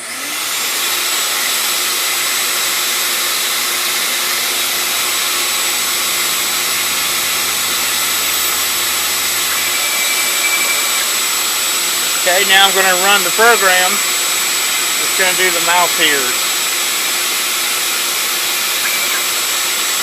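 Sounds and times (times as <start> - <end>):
router spindle whine: 0.0 - 20.0
vacuum running: 0.0 - 20.0.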